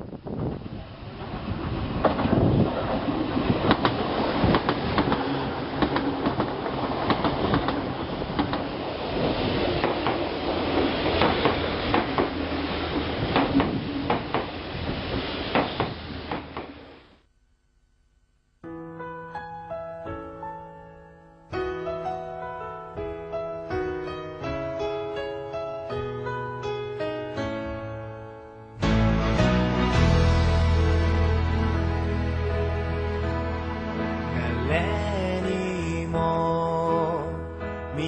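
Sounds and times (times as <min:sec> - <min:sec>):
electric train running on rails: 0:00.1 - 0:16.9
wheels clicking over rail joints: 0:01.3 - 0:14.6.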